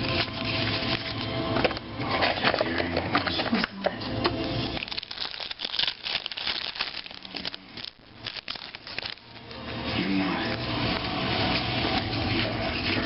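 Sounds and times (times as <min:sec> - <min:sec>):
cards rustling: 0:04.8 - 0:09.6
wrappers crinkling: 0:04.8 - 0:09.6.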